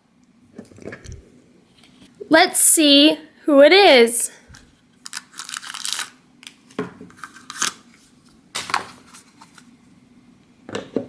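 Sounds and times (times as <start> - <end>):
plastic packaging clicks and snips: 5.0 - 6.6.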